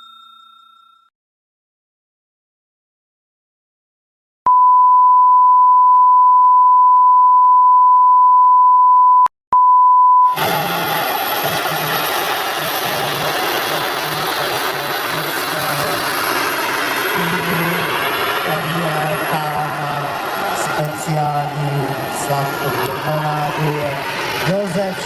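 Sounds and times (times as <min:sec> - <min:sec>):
single-pitch beep tone: 0:04.5 - 0:10.4
model helicopter turbine whine: 0:10.4 - 0:25.0.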